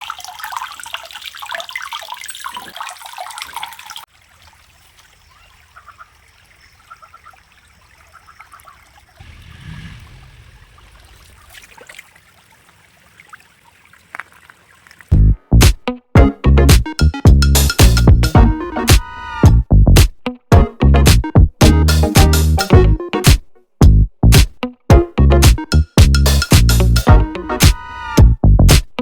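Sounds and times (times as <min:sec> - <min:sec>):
water trickling over stones: 0:00.0 - 0:09.5, 0:10.4 - 0:15.2.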